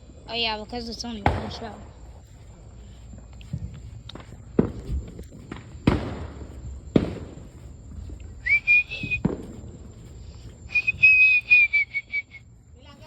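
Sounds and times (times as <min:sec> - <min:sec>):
fireworks banging: 0:00.3 - 0:02.8, 0:03.5 - 0:11.2
firework whistle: 0:08.4 - 0:09.8, 0:10.7 - 0:12.5.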